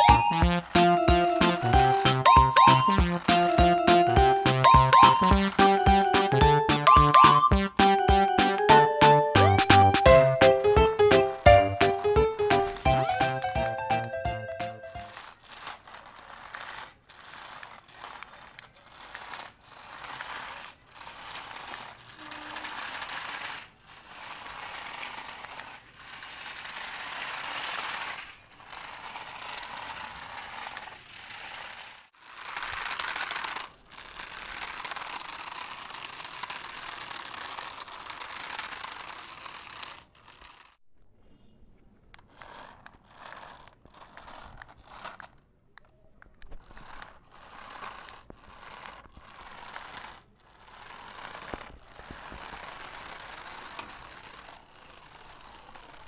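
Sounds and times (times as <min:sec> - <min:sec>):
toy car motor whirring and rattling: 0:00.0 - 0:07.9, 0:12.4 - 0:40.8, 0:42.1 - 0:56.0.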